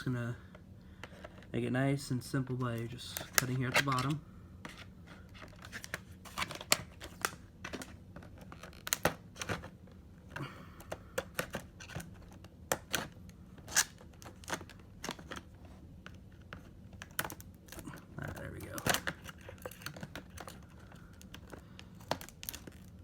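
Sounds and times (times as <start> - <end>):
plastic scraping rustle: 3.0 - 9.7, 16.4 - 23.0.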